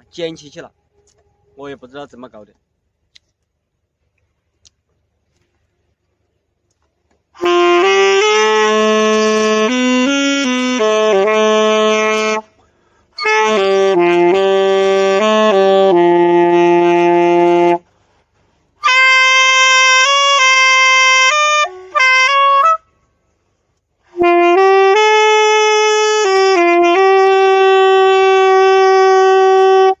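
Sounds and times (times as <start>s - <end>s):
solo saxophone: 7.3s - 23.0s, 24.0s - 30.0s.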